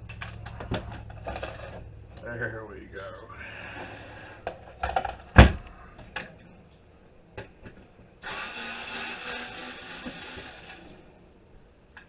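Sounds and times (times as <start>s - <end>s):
small electric motor running: 8.2s - 11.1s.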